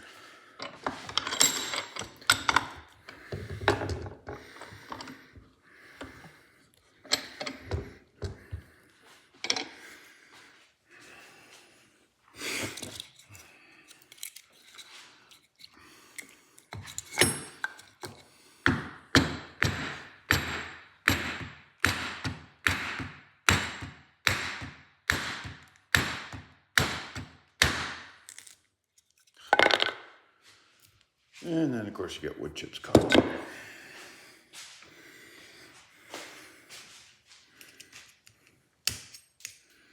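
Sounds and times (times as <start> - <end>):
hammer striking wooden block: 18.7 - 28.1.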